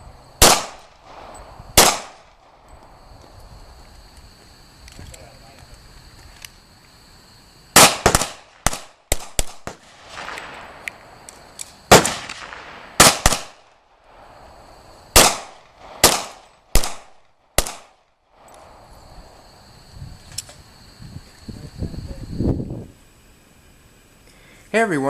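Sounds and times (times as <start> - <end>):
pistol shots: 0.4 - 2.6, 7.8 - 11.0, 11.9 - 13.8, 15.1 - 18.1.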